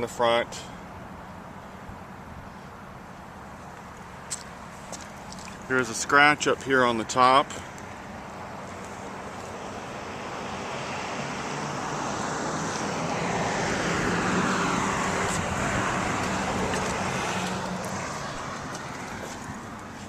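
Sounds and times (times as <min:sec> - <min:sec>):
vehicle driving past: 0:09.6 - 0:20.0.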